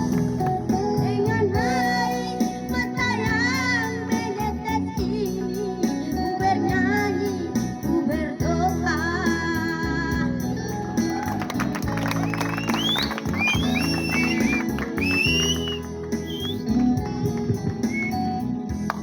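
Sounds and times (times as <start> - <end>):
song with singing voice: 0.0 - 11.6
steady bass accompaniment: 0.0 - 19.0.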